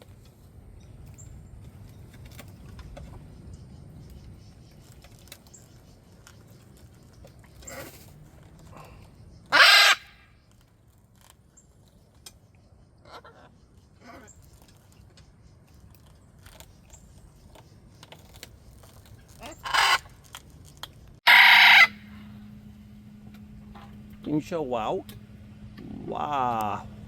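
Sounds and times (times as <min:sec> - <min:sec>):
parrot harsh screech: 0:09.5 - 0:10.2, 0:19.6 - 0:20.1, 0:21.3 - 0:22.1
parrot squawking: 0:09.5 - 0:10.2, 0:19.4 - 0:20.1, 0:21.3 - 0:22.1.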